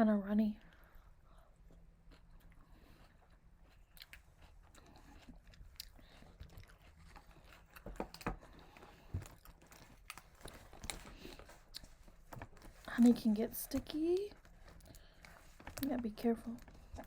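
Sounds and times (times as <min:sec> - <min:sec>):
person chewing food: 0:00.7 - 0:12.8.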